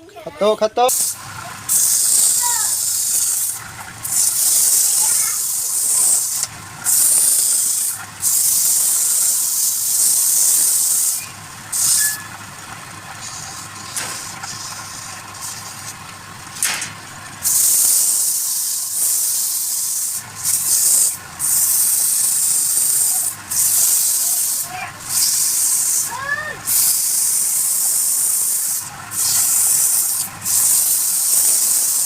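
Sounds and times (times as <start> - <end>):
tool shaving wood on a lathe: 17.4 - 32.0.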